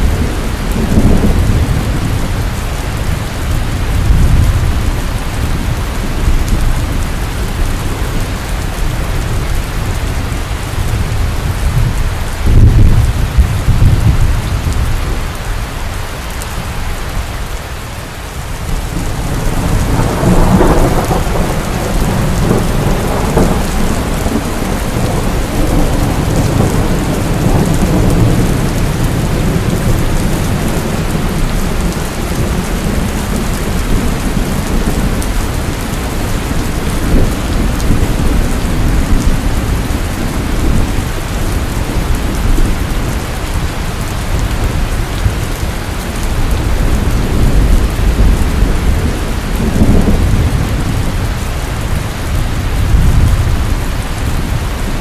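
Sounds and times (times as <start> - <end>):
rolling thunder: 0.0 - 15.3, 18.6 - 55.0
heavy pouring rain: 0.0 - 55.0.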